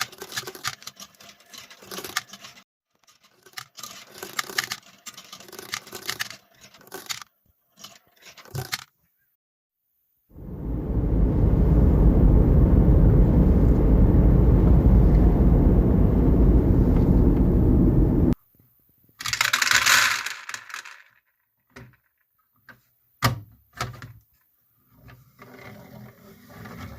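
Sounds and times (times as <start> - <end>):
marbles rolling on wooden run: 0.0 - 8.8, 19.2 - 21.3.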